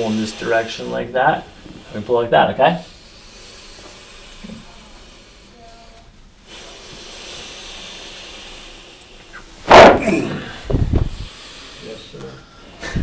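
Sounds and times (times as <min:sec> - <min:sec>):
person breathing out: 0:06.5 - 0:13.0.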